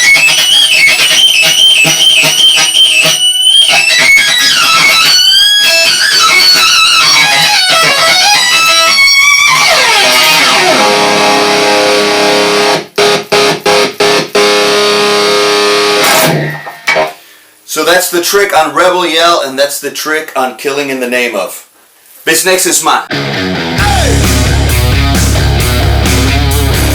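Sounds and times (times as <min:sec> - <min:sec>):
squealing electric guitar: 0:00.0 - 0:17.3, 0:23.1 - 0:26.9.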